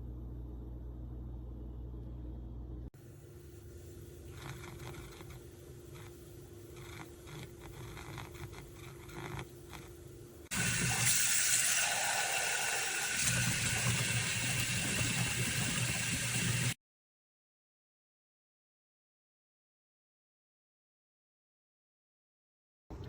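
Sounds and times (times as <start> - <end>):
faint steady hum: 0.0 - 16.8.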